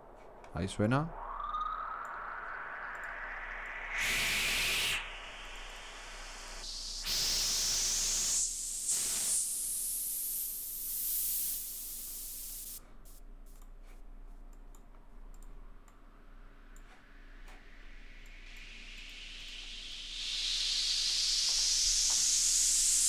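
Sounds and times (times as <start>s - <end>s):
rising filtered white noise: 0.0s - 12.8s, 15.5s - 23.0s
faint clicks: 14.5s - 16.0s.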